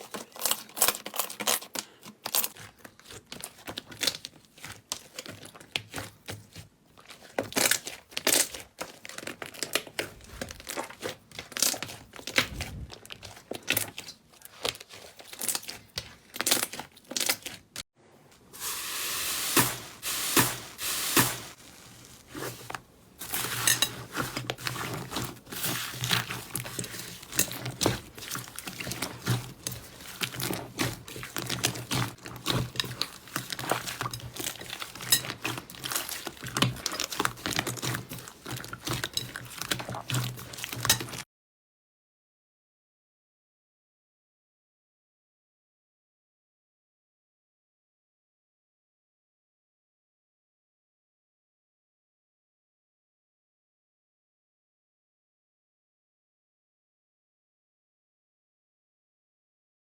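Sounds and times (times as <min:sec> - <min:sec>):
slime crackling and popping: 0:18.6 - 0:35.2.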